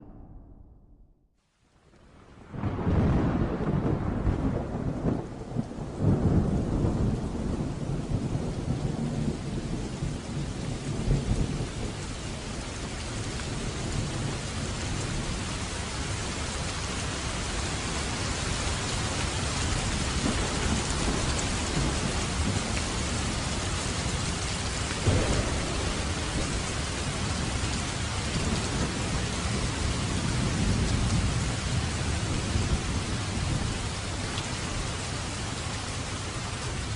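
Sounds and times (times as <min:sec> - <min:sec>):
thunder rolling: 0:00.0 - 0:01.2, 0:02.4 - 0:12.0, 0:19.8 - 0:34.1
steady rain falling: 0:01.4 - 0:36.9.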